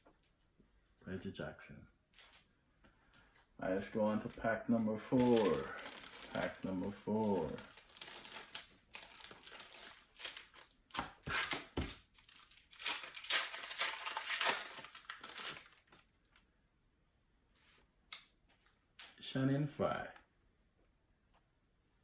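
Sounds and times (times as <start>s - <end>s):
plastic wrapper tearing and crinkling: 5.0s - 16.4s.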